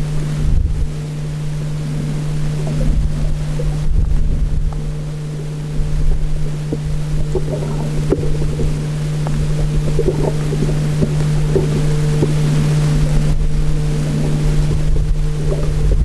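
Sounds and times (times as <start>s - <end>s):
engine hum underwater: 0.0s - 16.0s
irregular crackling: 6.5s - 14.4s.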